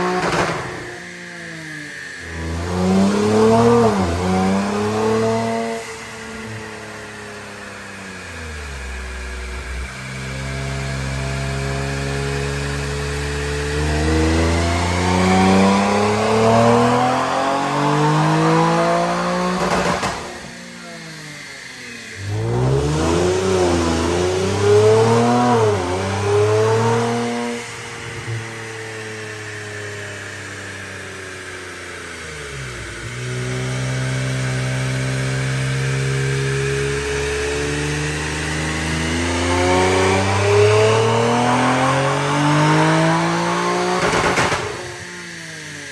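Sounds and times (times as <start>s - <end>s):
exhaust cracks: 0.0s - 1.1s, 19.4s - 20.9s, 43.2s - 45.4s
car engine revving under load: 0.0s - 45.9s.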